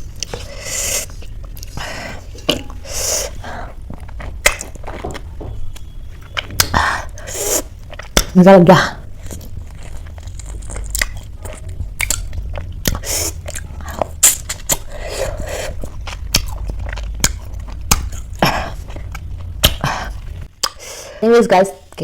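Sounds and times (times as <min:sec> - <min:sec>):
steady low hum: 0:00.0 - 0:22.0
crunchy chewing: 0:09.0 - 0:20.8.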